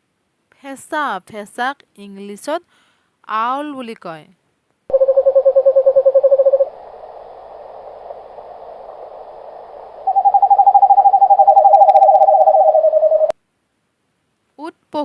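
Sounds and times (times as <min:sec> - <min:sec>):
owl trilling call: 0:04.9 - 0:06.8, 0:10.0 - 0:13.3.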